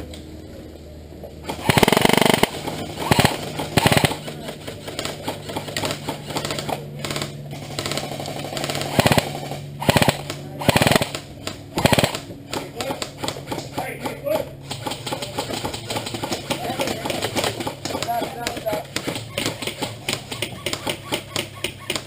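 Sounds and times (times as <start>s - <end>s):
airsoft gun bursts: 1.4s - 22.0s.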